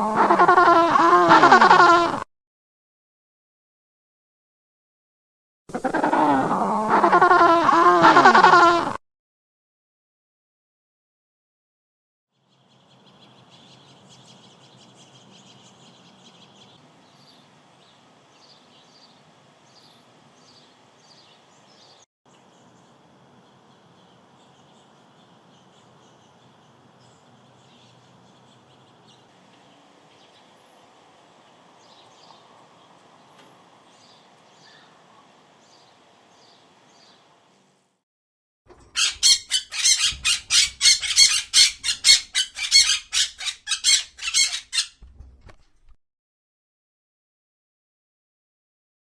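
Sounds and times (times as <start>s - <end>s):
bird calling in fast high notes: 38.8s - 45.0s.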